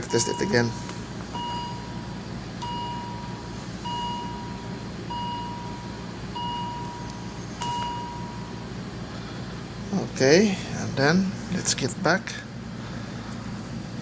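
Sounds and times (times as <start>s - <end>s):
patient monitor beeping: 0.0s - 8.6s.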